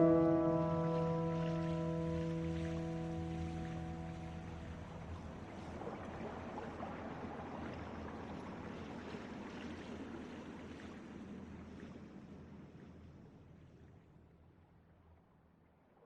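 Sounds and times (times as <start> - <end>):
water fountain splashing: 0.0 - 10.8.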